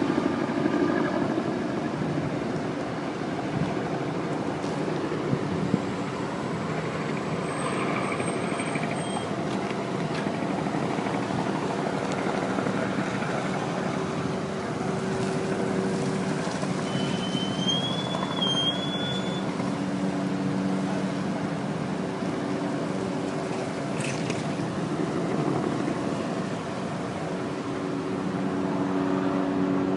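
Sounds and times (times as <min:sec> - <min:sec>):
helicopter droning: 0:00.0 - 0:29.9
high whistle: 0:16.8 - 0:19.5.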